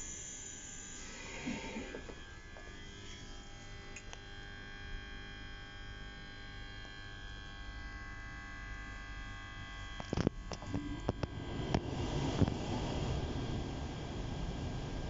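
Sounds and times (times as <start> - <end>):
train whine and rumble: 10.5 - 15.0.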